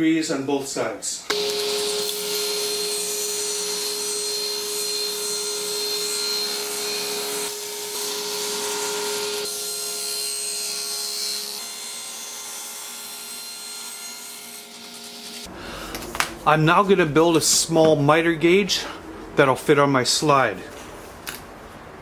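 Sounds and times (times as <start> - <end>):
power saw motor whine: 1.3 - 15.5.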